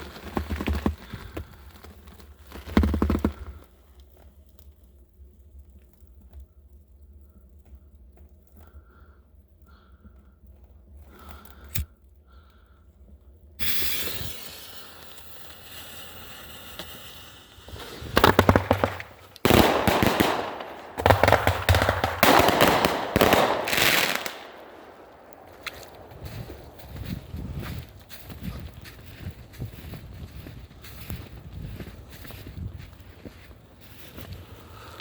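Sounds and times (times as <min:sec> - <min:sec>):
firework hissing: 0:13.6 - 0:18.2, 0:19.1 - 0:26.7
firework crackling pops: 0:13.6 - 0:27.0.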